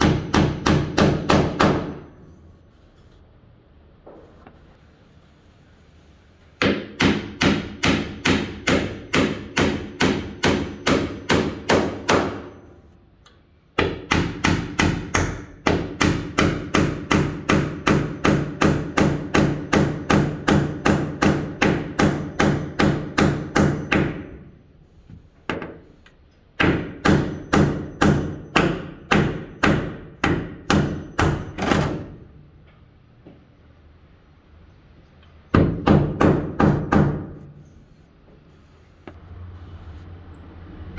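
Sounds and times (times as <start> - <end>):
hammer driving nail into wood: 0.0 - 2.1, 6.6 - 12.6, 13.8 - 24.3.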